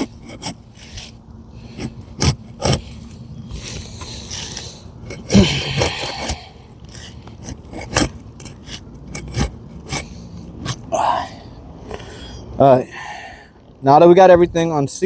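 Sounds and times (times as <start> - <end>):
tool scraping roof shingle: 0.0 - 10.9.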